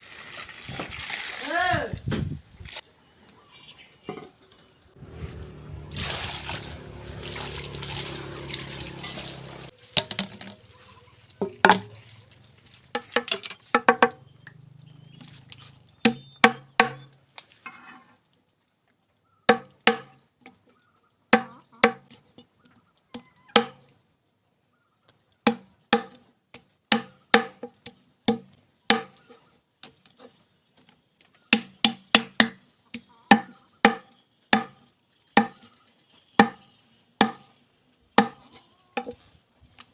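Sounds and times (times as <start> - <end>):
knife chopping on cutting board: 33.3 - 34.0, 35.4 - 35.6.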